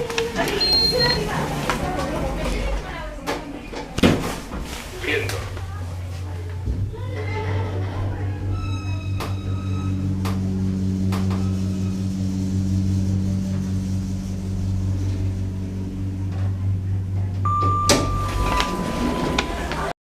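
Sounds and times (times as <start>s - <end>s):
hydraulic pump motor humming: 0.0s - 20.0s
two-step beep: 17.5s - 18.9s.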